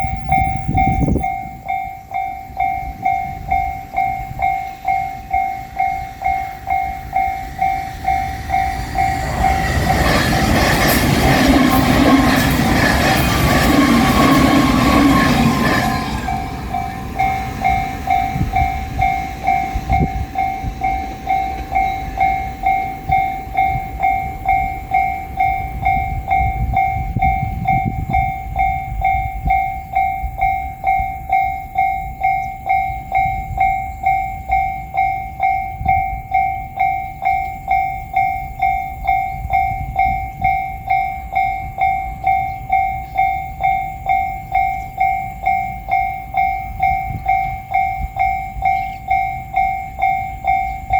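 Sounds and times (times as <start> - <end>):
low rumble: 0.0 - 1.4
level crossing warning bell: 0.0 - 50.9.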